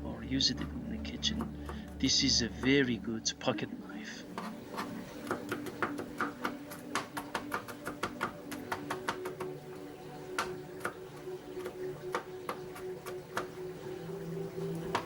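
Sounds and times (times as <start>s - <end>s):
low steady hum: 0.0s - 5.2s
knife chopping on cutting board: 4.3s - 9.6s, 10.3s - 13.6s.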